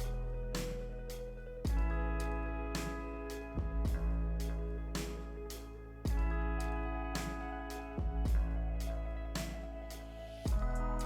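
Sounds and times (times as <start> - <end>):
instrumental chords with bass line: 0.0 - 11.0.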